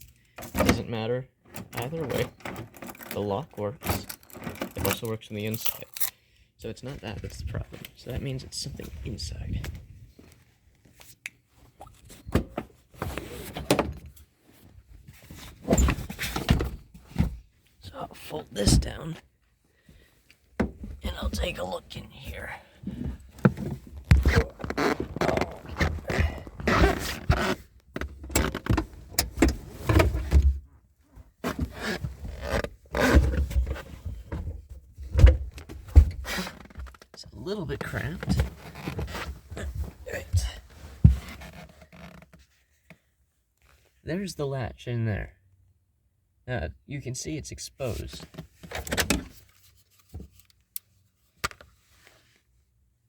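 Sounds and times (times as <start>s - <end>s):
thumps and knocks in car: 22.8s - 30.6s, 31.4s - 37.0s.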